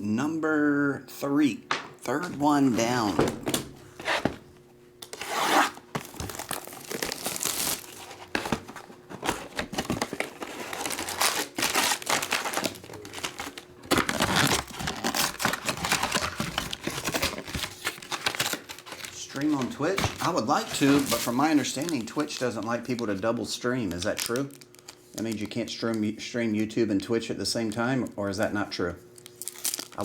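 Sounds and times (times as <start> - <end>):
card pack wrapper crinkling: 5.1 - 26.0, 29.2 - 30.0.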